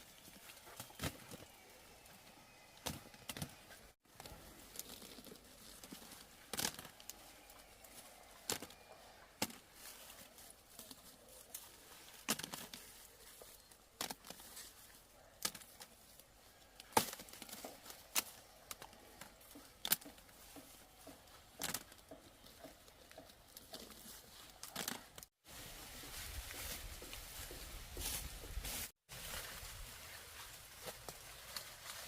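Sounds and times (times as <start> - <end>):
crop plants snapping and tearing: 4.2 - 7.6, 8.4 - 9.9, 10.8 - 13.1, 13.8 - 20.4, 21.5 - 22.2, 23.6 - 25.3.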